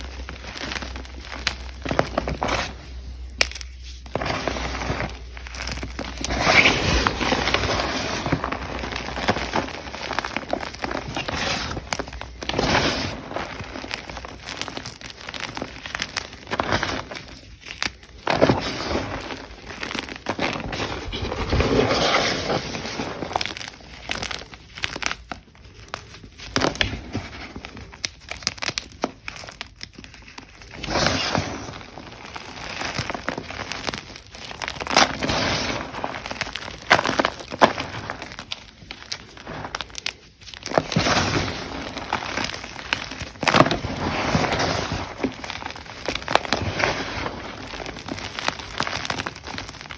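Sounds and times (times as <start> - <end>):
chalk being crushed: 0.0 - 25.3, 25.9 - 49.9.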